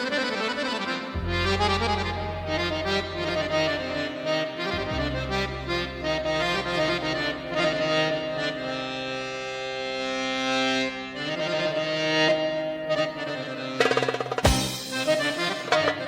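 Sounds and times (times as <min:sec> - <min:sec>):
instrumental music with held notes: 0:00.0 - 0:16.0.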